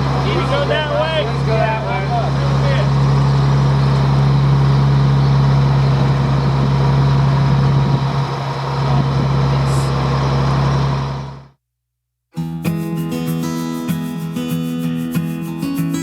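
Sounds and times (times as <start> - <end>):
heavy vehicle engine running: 0.0 - 11.6.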